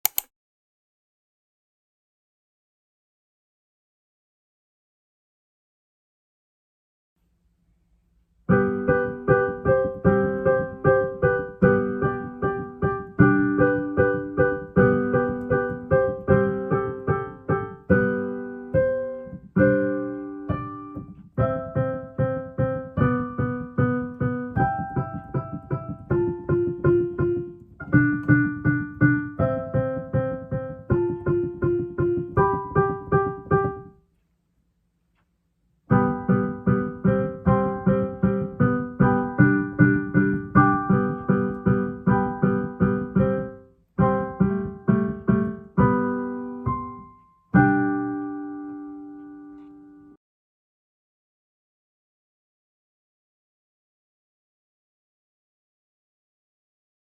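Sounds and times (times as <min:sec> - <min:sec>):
solo piano playing: 0:08.5 - 0:34.0, 0:35.9 - 0:50.2.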